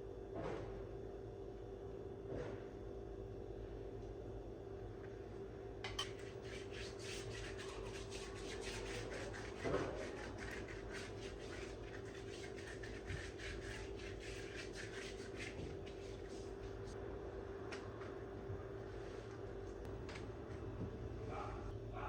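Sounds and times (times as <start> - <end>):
steady low hum: 0.0 - 22.0
rhythmic rubbing strokes: 6.2 - 17.0.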